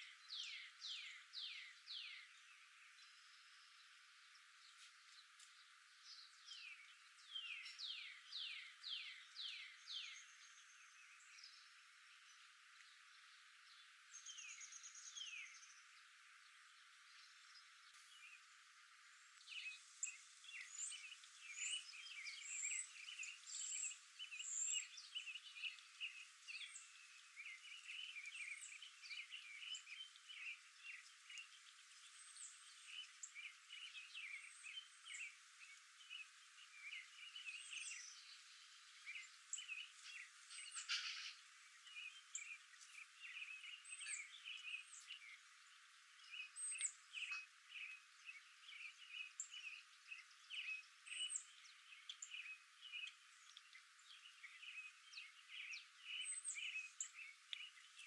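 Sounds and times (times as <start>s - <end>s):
songbirds chirping: 0.0s - 58.0s.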